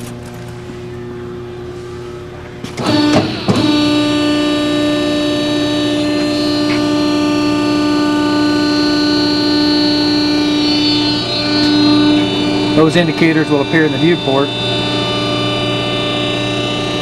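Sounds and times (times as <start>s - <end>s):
electric motor and hydraulic pump hum: 0.0s - 17.0s
machine clunks: 2.5s - 4.2s.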